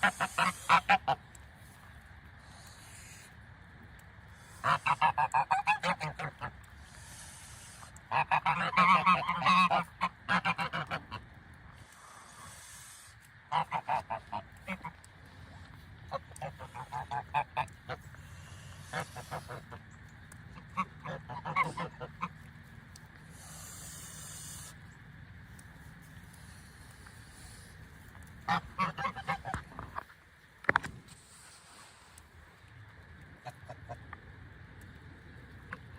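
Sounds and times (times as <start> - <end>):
geese honking: 0.0 - 1.3, 4.4 - 11.3, 11.9 - 22.7, 28.3 - 30.0.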